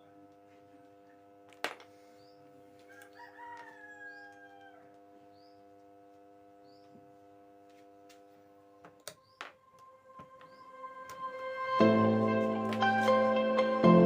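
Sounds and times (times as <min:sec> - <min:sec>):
rooster crowing faintly: 0:02.7 - 0:05.3.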